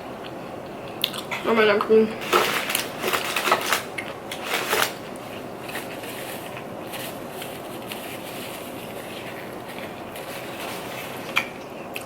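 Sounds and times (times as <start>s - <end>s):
soft chewing ticks: 0.2s - 1.4s.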